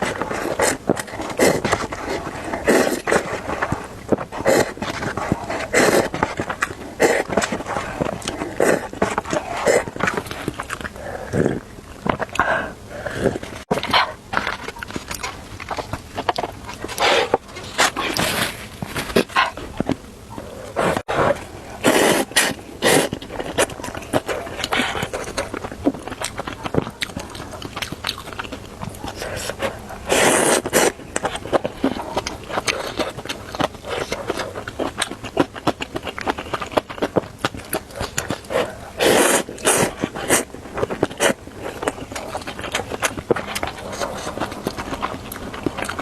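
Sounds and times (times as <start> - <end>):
noodle slurping: 0.0 - 14.2, 20.7 - 26.6, 29.0 - 35.0, 37.6 - 46.0
wet chewing and smacking: 0.0 - 46.0.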